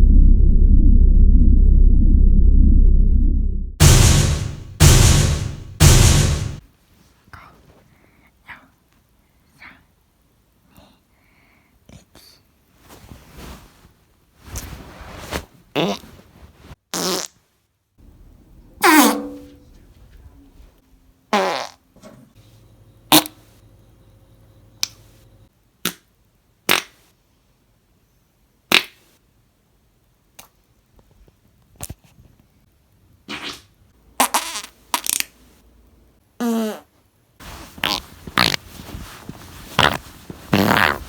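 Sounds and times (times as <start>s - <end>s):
person farting: 17.0s - 17.3s, 21.4s - 21.8s, 36.4s - 36.9s, 37.8s - 38.6s, 39.8s - 41.0s.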